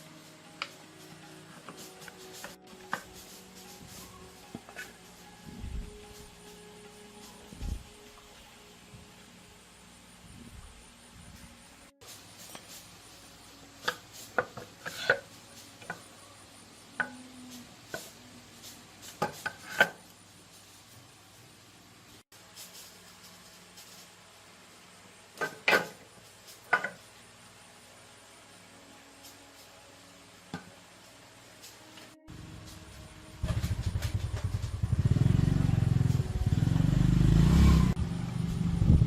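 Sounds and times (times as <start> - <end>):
faint room hiss: 0.0 - 37.7
tools rubbing: 0.1 - 8.3, 11.3 - 16.3, 17.0 - 21.0
hand tools clicking and knocking: 0.6 - 5.2, 13.8 - 16.2, 25.4 - 27.1.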